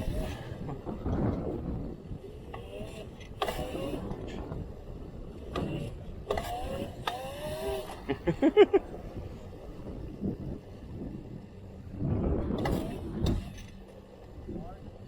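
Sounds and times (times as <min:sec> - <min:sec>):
electric dirt bike motor whining: 0:00.0 - 0:15.0.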